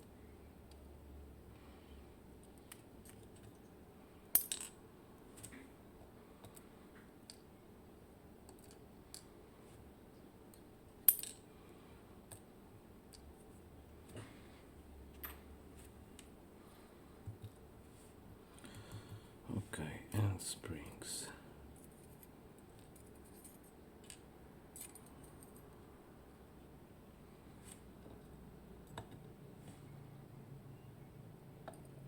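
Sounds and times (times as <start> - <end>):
metal pins clinking on hard surface: 4.3 - 4.8, 11.0 - 11.4.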